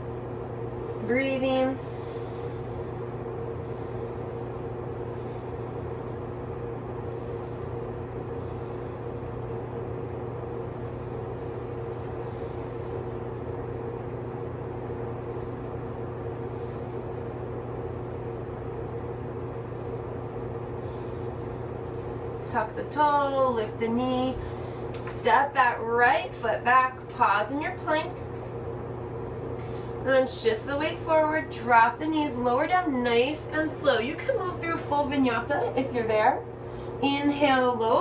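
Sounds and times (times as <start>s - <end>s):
steady mechanical hum: 0.0s - 38.0s.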